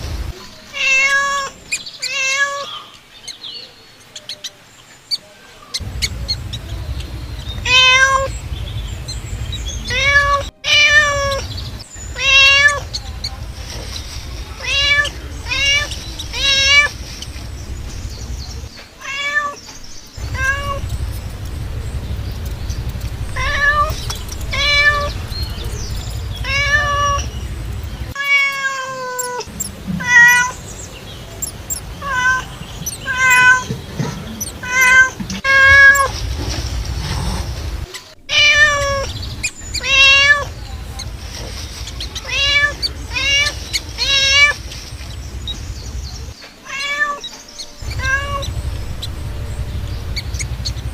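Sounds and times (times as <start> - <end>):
cat meowing: 0.6 - 2.9, 7.6 - 8.3, 9.6 - 13.4, 14.4 - 17.0, 19.0 - 19.6, 20.2 - 27.4, 28.1 - 30.6, 32.0 - 36.1, 37.0 - 45.2, 46.2 - 50.7
steady low hum: 5.8 - 18.7, 20.2 - 28.2, 34.2 - 46.4, 47.8 - 50.9.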